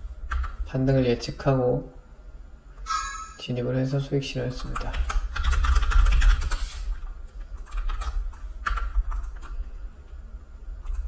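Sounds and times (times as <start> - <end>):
steady low hum: 0.0 - 11.0
computer keyboard typing: 0.3 - 0.6, 4.6 - 9.6, 10.8 - 11.0.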